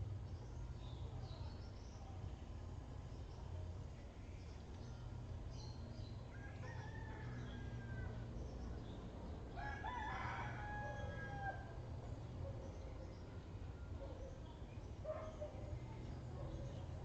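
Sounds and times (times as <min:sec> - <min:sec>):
rooster crowing: 0:06.3 - 0:08.2, 0:09.6 - 0:11.8.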